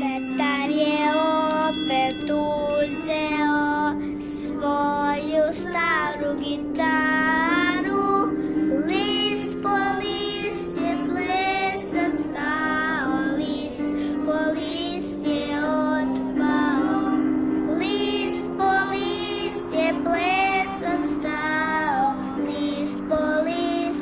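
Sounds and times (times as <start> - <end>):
instrumental accompaniment: 0.0 - 4.6
child singing: 0.0 - 24.0.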